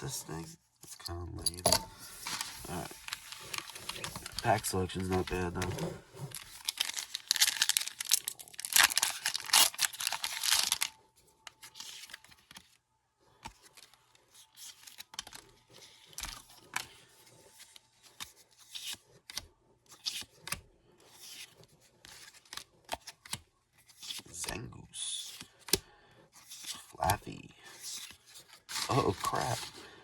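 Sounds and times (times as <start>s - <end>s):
cards rustling: 0.8s - 30.0s
foil pack tearing and crinkling: 6.3s - 10.9s.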